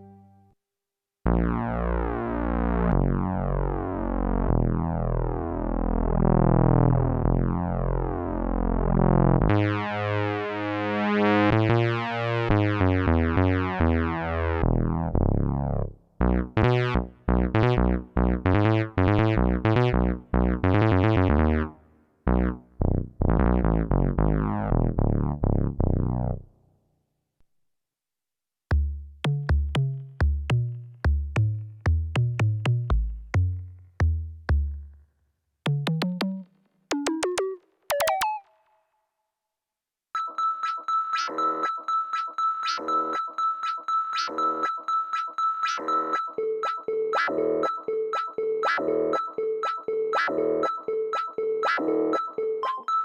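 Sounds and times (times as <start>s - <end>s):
synthesizer held chords: 1.3s - 26.4s.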